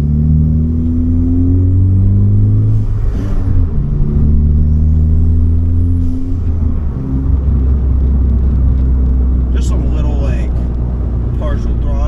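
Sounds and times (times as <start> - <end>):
car engine accelerating: 0.0 - 12.0
rush of air on gear change: 2.0 - 9.6.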